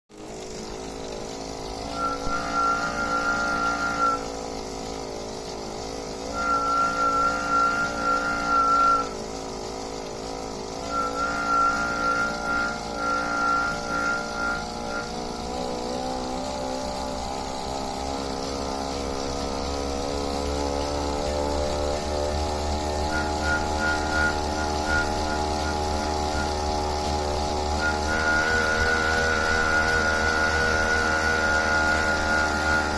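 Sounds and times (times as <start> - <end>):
bike trainer whining hum: 0.1 - 32.9
high squeal: 1.9 - 4.3, 6.3 - 9.2, 10.8 - 15.4, 19.5 - 32.9.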